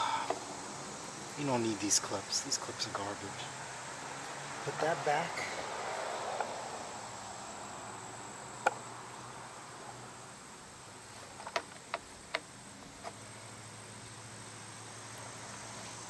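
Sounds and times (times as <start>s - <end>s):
faint steady hum: 0.0s - 16.0s.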